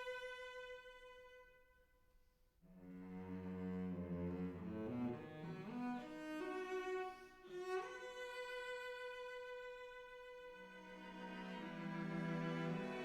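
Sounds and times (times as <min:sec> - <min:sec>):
slow bowed strings music: 0:02.7 - 0:13.0.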